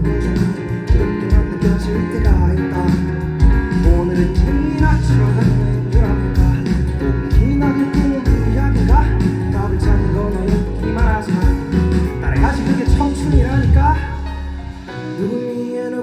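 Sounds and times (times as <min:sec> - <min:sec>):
live band instrumental music: 0:00.0 - 0:16.0.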